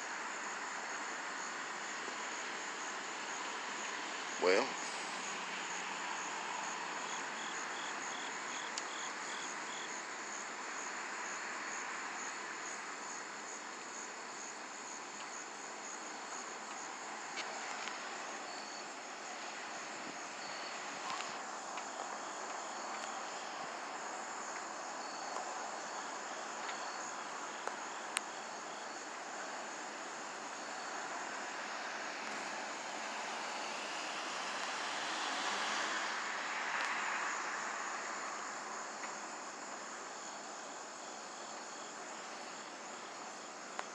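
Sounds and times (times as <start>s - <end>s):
background hiss: 0.0s - 43.9s
crickets trilling: 0.0s - 43.9s
low spaced insect chirps: 14.4s - 32.2s.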